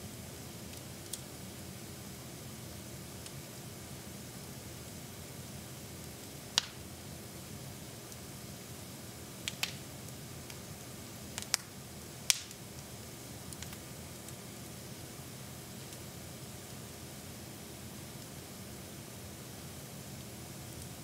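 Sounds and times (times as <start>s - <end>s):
steady soft hiss: 0.0s - 21.0s
fire popping and crackling: 0.5s - 1.4s, 6.0s - 6.9s, 9.4s - 14.9s, 15.6s - 16.7s, 20.0s - 21.0s.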